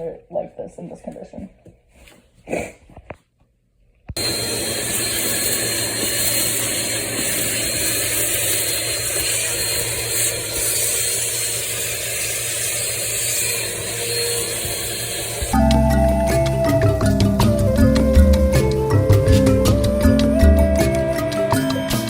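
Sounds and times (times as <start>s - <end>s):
electric tool motor running: 4.2s - 15.6s.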